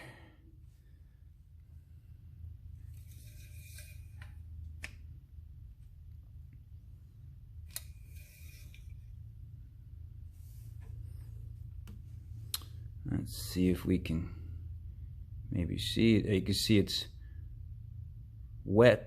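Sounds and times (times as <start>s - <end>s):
low steady hum: 0.0s - 19.0s
metal dipstick scraping in tube: 2.9s - 4.4s, 7.8s - 9.0s.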